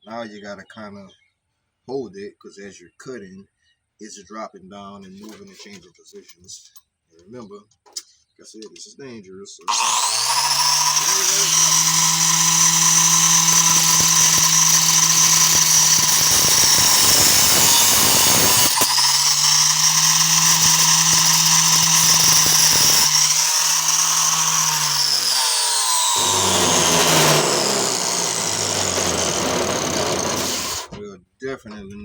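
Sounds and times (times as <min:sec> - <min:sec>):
angle grinder cutting metal: 0:09.7 - 0:31.0.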